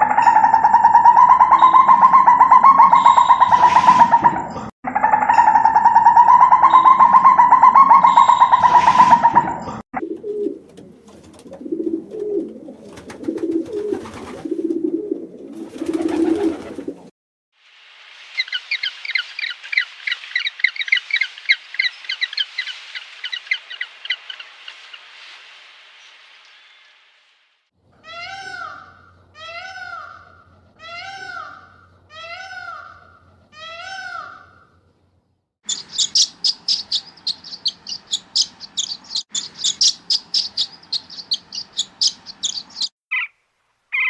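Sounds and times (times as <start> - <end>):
dove cooing: 0.0 - 4.4, 5.3 - 17.1
small birds twittering: 0.0 - 4.7, 18.3 - 25.4, 35.7 - 44.0.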